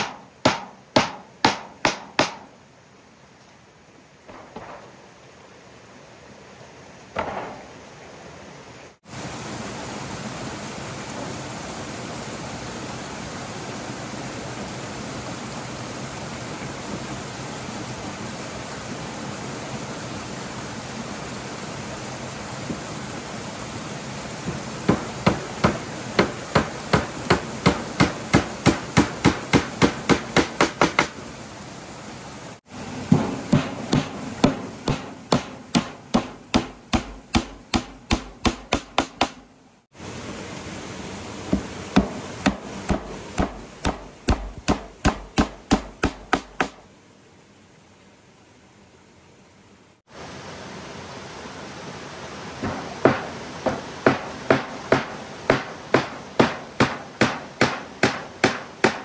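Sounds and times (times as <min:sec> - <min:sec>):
hammer blows: 0:33.0 - 0:39.5, 0:52.6 - 0:59.0.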